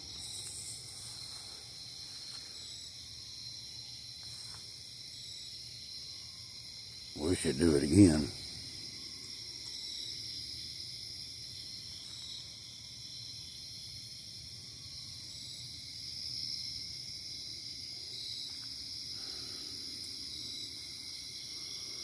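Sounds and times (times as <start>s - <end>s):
insects trilling: 0.0s - 22.0s.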